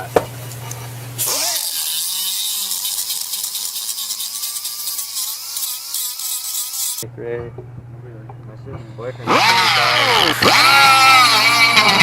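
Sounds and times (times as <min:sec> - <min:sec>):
angle grinder grinding metal: 0:01.2 - 0:07.0, 0:09.1 - 0:12.0.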